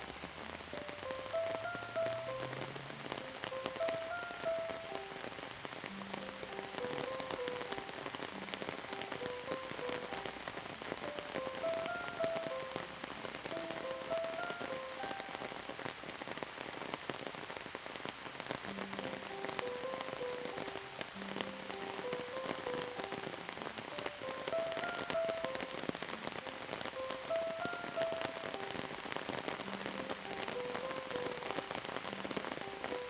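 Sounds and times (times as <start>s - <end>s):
slow soft melody: 0.0s - 16.2s, 18.4s - 33.0s
rain drops hitting: 0.0s - 33.0s.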